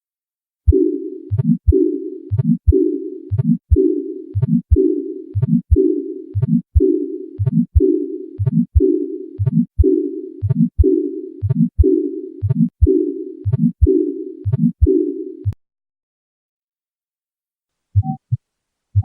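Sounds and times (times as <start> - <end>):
heartbeat with murmur: 0.7 - 15.6.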